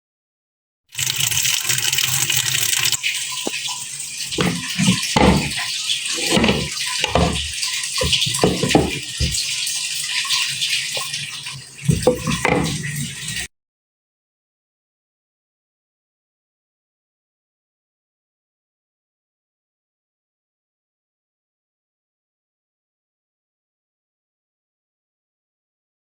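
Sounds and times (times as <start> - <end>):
tap water running into sink: 0.9 - 13.5
knocks and clunks: 4.3 - 9.5, 11.9 - 13.5.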